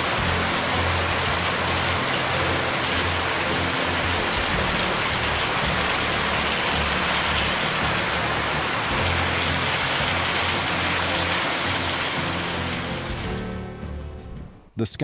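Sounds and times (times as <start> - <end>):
hail and rain pelting down: 0.0 - 13.5.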